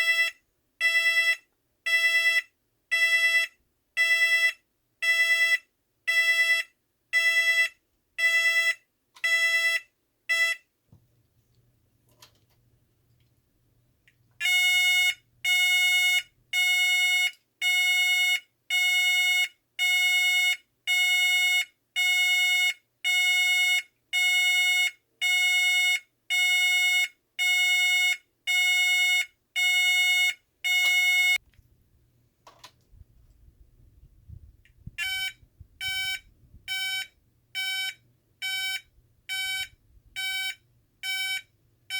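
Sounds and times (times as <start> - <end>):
shrill buzzy alarm beeps: 14.4 - 31.4, 35.0 - 41.5.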